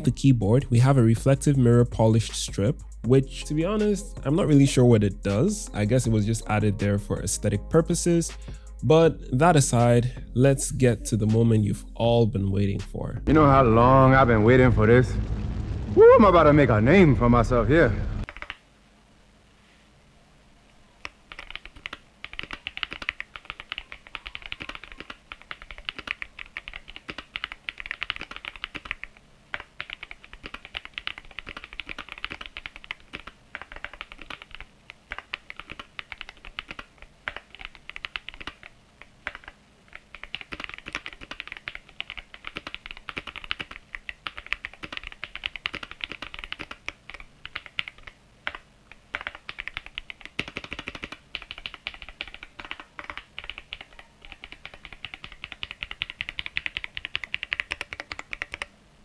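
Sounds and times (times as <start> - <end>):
mechanical keyboard typing: 18.2 - 18.6, 21.0 - 58.8.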